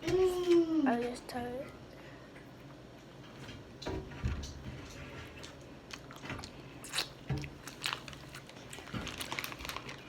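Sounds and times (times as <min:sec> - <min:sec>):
person chewing food: 0:05.0 - 0:10.0.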